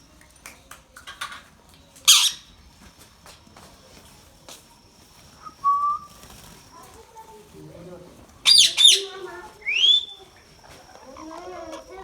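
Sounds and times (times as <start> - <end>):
parrot squawk: 2.1 - 2.5, 8.4 - 10.2.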